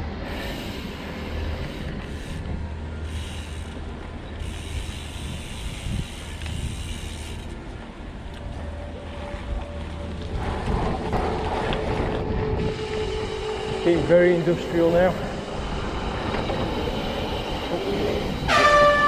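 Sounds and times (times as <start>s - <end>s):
bike tyres rolling on path: 0.0s - 19.0s
wind rushing over microphone: 4.2s - 7.2s, 9.2s - 19.0s.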